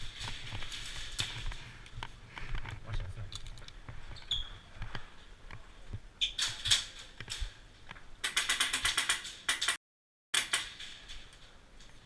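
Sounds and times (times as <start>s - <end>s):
airsoft rifle shots: 8.2s - 9.8s, 10.4s - 10.8s.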